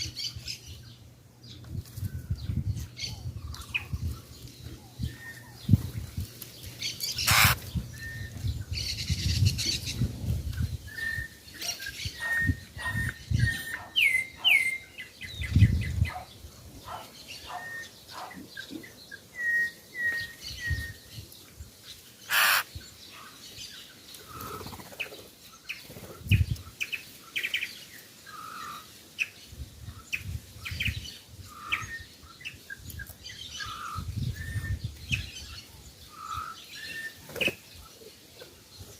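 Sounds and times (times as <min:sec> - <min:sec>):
birds chirping: 0:00.0 - 0:10.0, 0:22.0 - 0:25.2.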